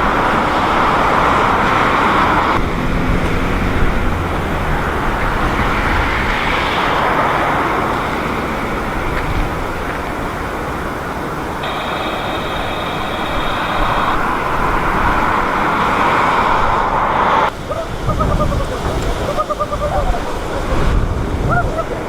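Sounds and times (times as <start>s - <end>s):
jet airliner engine rush: 0.0s - 22.0s
wind buffeting microphone: 0.0s - 22.0s
high whine: 3.6s - 17.6s.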